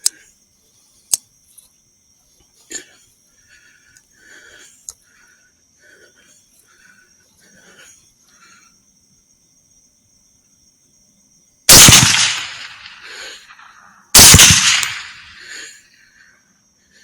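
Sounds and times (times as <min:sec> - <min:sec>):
rifle shots with echo: 0:11.7 - 0:13.6, 0:14.2 - 0:15.4.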